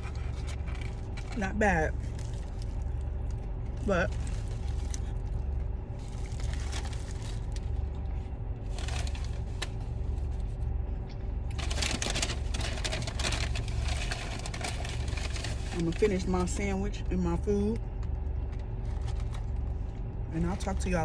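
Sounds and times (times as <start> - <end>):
food wrappers crinkling: 0.0 - 8.0, 8.7 - 10.4, 11.5 - 16.6, 18.1 - 19.8
steady low rumble: 0.0 - 21.0.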